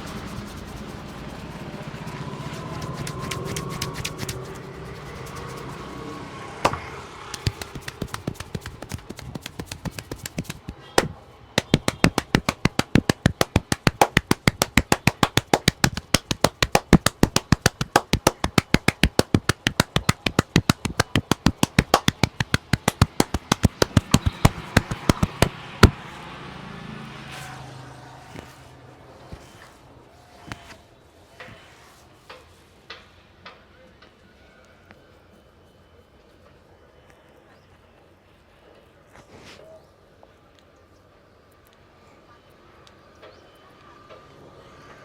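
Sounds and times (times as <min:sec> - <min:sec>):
hands slapping and tapping head: 0:00.0 - 0:06.0, 0:06.6 - 0:26.0.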